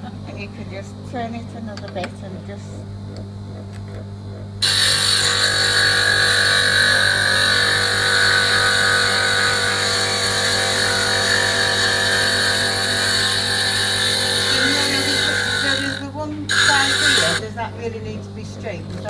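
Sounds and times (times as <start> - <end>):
grinder motor hum: 0.0 - 19.0
glass grinder grinding glass: 4.6 - 19.0.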